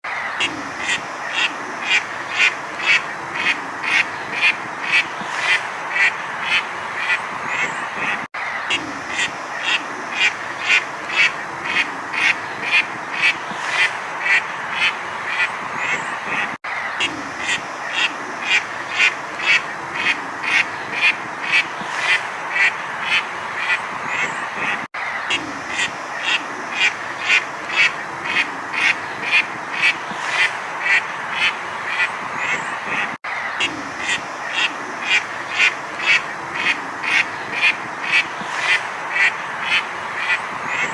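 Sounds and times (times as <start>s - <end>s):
background duck calls: 0.1s - 40.9s
ducks quacking: 0.1s - 40.9s.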